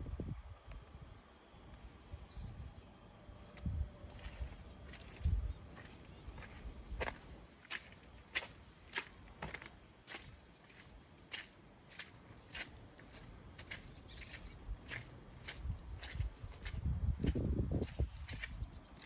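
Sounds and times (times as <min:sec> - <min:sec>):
footsteps on woodland path: 0:03.4 - 0:19.0
thin bird chirp: 0:04.1 - 0:16.9, 0:17.8 - 0:19.0.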